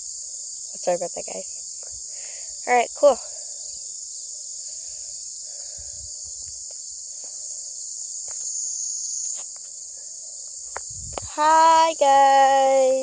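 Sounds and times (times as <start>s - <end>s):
crickets chirring: 0.0s - 13.0s.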